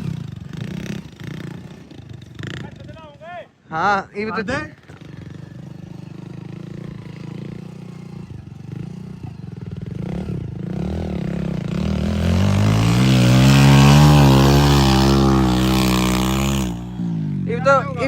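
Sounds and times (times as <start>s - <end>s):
diesel engine revving: 10.7s - 17.4s.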